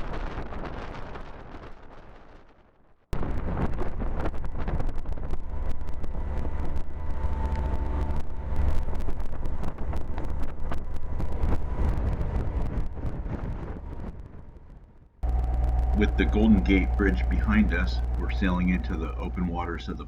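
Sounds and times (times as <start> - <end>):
wind buffeting microphone: 3.2 - 19.9
boat engine running: 15.2 - 20.0.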